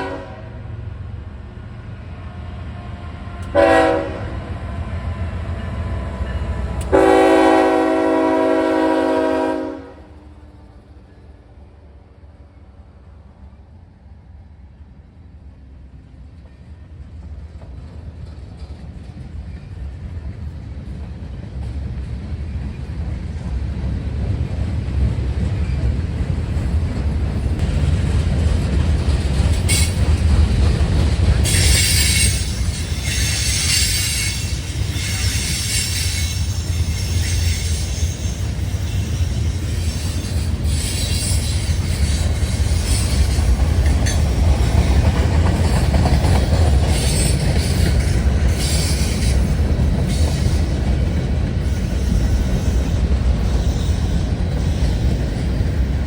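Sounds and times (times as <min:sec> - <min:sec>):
train rumbling past: 0:00.0 - 0:56.0
train wheel squeal: 0:29.3 - 0:56.0.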